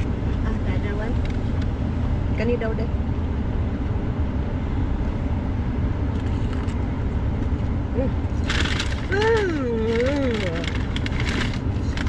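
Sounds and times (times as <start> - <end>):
vehicle engine rumble inside: 0.0 - 12.0.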